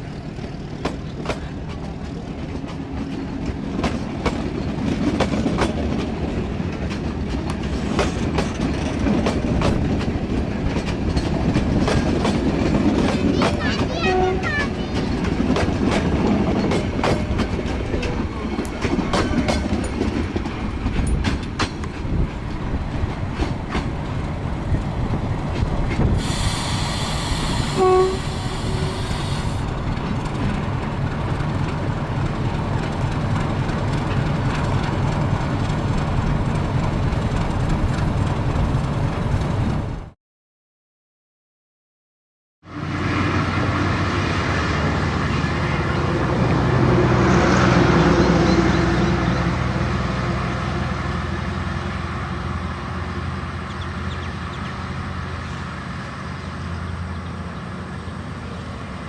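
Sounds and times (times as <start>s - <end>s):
train wheels clacking over rails: 0.0s - 39.9s
train rumble: 0.0s - 40.2s, 42.7s - 59.0s
train horn toots: 14.0s - 14.6s, 27.6s - 29.5s.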